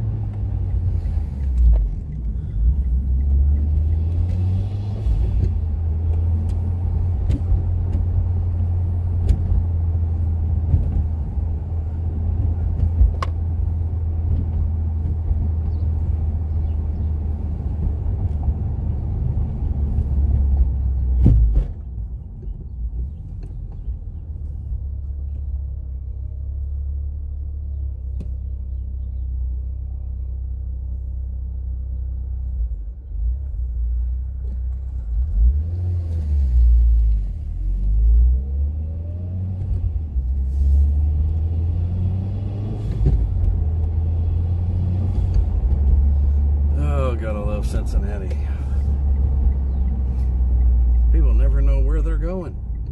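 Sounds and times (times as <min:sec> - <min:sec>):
car engine low rumble: 0:00.0 - 0:52.9.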